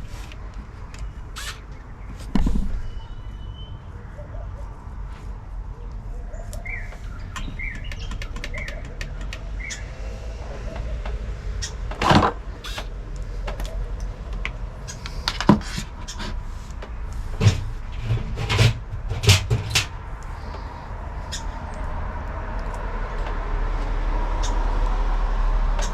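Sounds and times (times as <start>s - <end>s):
bird chirping: 1.0s - 4.6s, 6.1s - 11.9s, 20.5s - 21.8s
loud thumps: 2.2s - 3.1s
sharp clicks and knocks: 6.9s - 9.8s, 10.8s - 20.3s.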